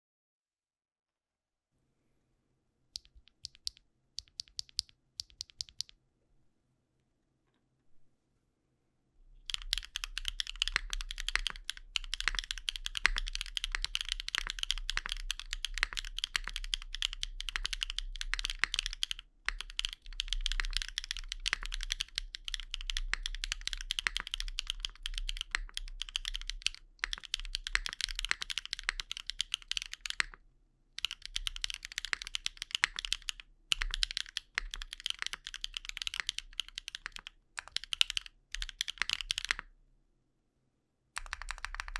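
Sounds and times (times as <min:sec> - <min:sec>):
typing on mechanical keyboard: 0:03.0 - 0:05.9, 0:09.4 - 0:30.4, 0:31.0 - 0:39.6, 0:41.2 - 0:41.9.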